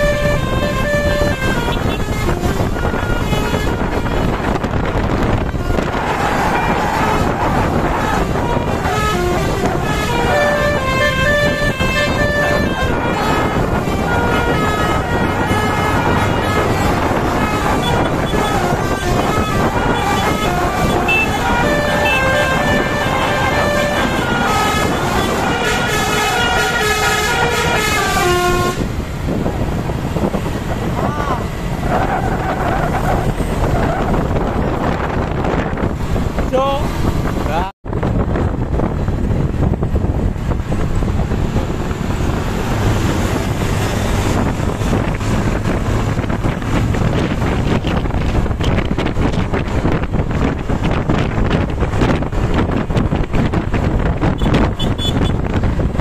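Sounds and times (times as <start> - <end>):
bus horn playing melodic notes: 0.0 - 29.1, 54.2 - 55.6
engine and road noise: 0.0 - 56.0
wind buffeting microphone: 0.0 - 56.0.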